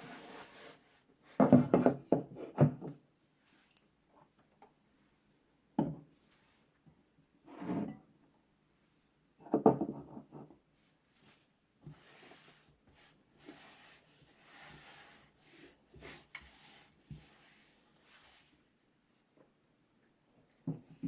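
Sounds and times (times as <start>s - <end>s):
rubbing against a surface: 0.0s - 1.0s, 11.2s - 18.6s.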